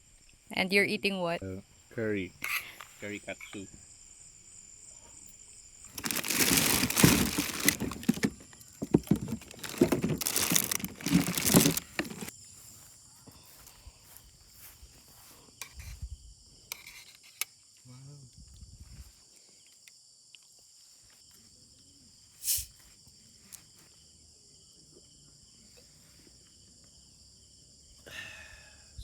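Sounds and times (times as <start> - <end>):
crickets chirring: 0.0 - 29.0
crinkling and rustling: 5.8 - 12.3.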